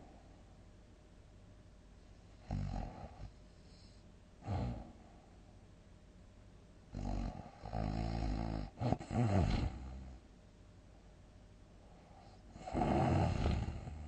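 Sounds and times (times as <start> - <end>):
heavy snoring: 2.4 - 3.3, 4.4 - 5.0, 6.9 - 10.2, 12.5 - 14.0.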